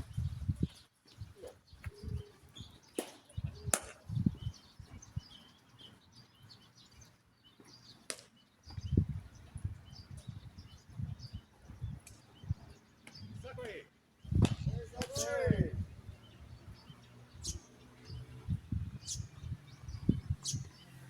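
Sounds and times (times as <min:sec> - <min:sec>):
faint bird chirps: 0:00.0 - 0:21.0
sharp smacks: 0:03.0 - 0:04.1, 0:08.1 - 0:08.4, 0:14.4 - 0:15.2.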